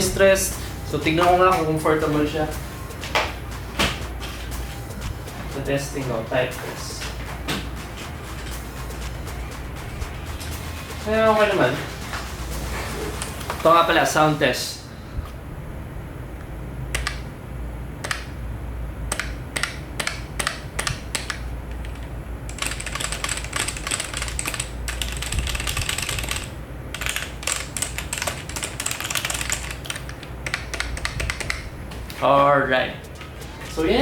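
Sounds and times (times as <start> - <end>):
keyboard typing: 19.1 - 31.7.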